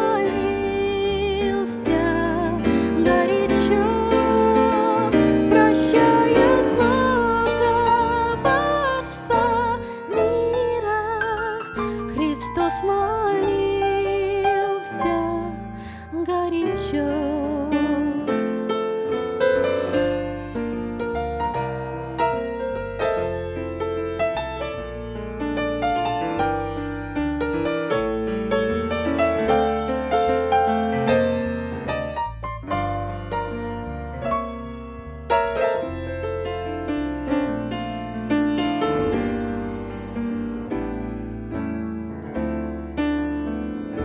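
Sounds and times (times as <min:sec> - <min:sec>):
slow hymn-like piano music: 0:00.0 - 0:44.0.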